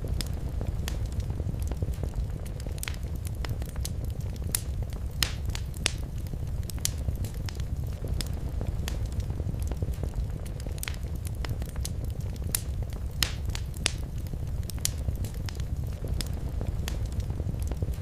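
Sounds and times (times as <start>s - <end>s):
wood fire crackling: 0.0s - 18.0s.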